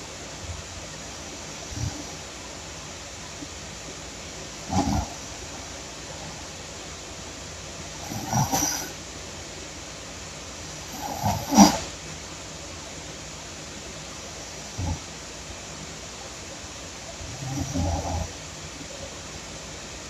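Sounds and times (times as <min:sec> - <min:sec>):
background hiss: 0:00.0 - 0:20.0
woman snoring loudly: 0:17.3 - 0:18.3.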